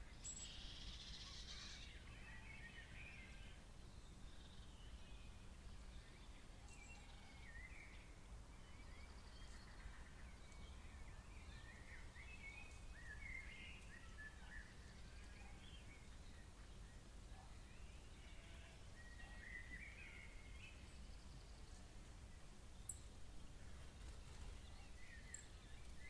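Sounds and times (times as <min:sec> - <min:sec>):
birds chirping and warbling: 0:00.1 - 0:26.0.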